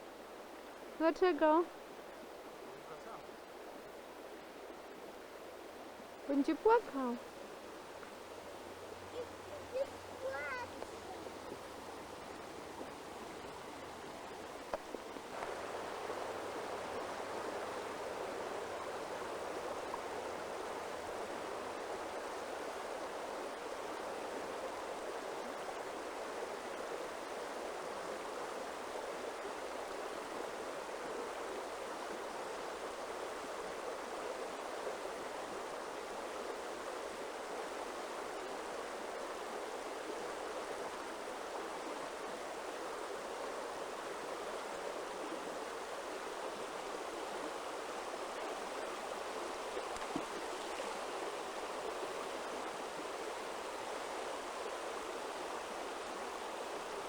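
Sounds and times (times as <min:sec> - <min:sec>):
stream water flowing: 0:00.0 - 0:57.0.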